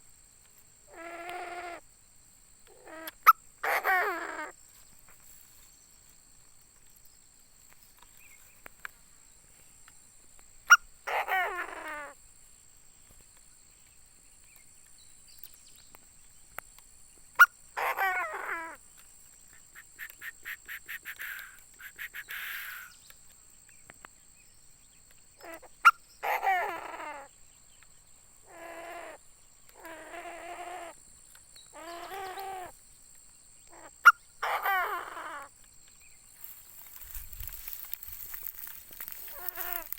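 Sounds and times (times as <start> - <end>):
francolin calling: 0.8 - 1.9, 2.6 - 6.0, 10.6 - 12.2, 17.2 - 39.9.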